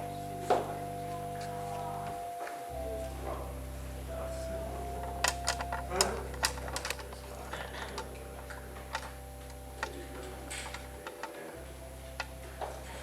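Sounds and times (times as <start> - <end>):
held musical note: 0.0 - 13.0
steady low hum: 0.0 - 13.0
light clicks and knocks: 5.0 - 13.0.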